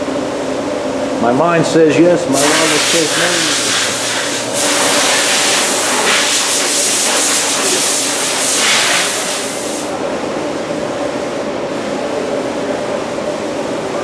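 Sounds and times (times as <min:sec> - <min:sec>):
continuous machine hum: 0:00.0 - 0:14.0
loud hiss of escaping air: 0:02.4 - 0:10.0.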